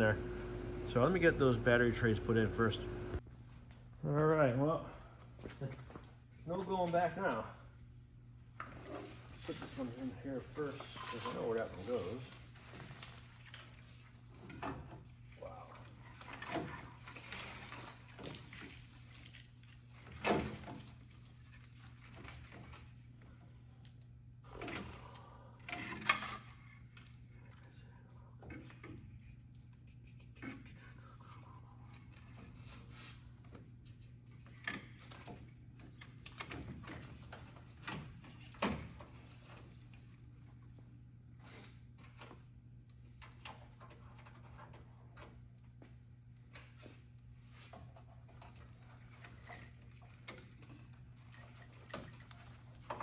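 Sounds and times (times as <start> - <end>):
steady low hum: 0.0 - 3.4.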